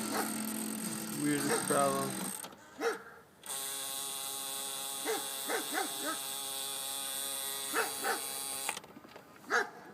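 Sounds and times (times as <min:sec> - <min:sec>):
cassette player grinding buzz: 0:00.0 - 0:02.6, 0:03.4 - 0:08.9.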